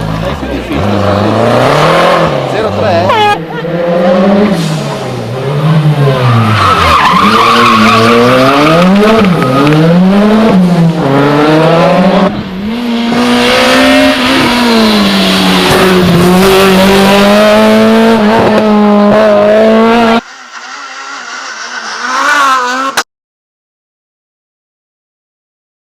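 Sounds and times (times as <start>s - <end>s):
car engine revving: 0.0s - 23.1s
rally car engine revving: 0.0s - 23.1s
tyre squeal: 20.2s - 23.0s.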